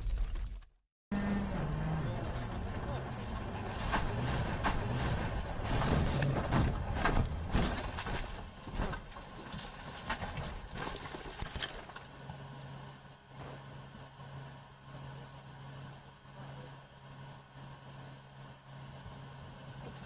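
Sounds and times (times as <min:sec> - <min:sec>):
low engine hum: 0:01.1 - 0:20.0
car knocks thuds and scrapes: 0:02.2 - 0:11.2.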